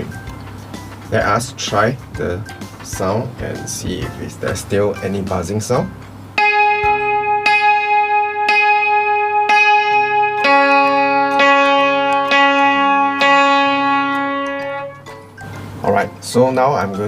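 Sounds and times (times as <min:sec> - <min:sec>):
hammered dulcimer notes ringing: 0:06.4 - 0:16.8.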